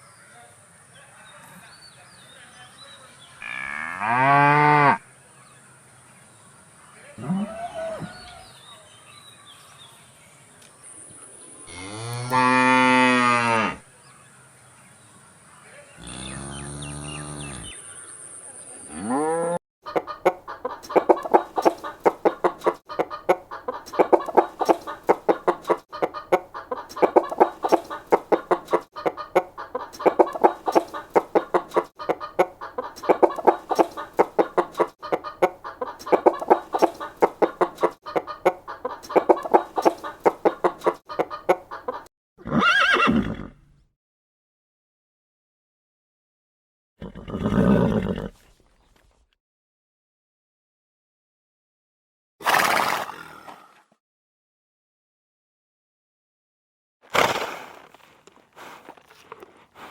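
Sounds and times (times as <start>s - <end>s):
chickens clucking: 19.8s - 42.1s.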